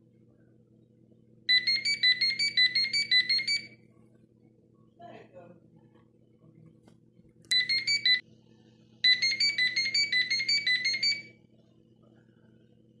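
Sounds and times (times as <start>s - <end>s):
cordless phone beeping ringtone: 1.5s - 3.8s, 7.5s - 8.2s, 9.0s - 11.4s.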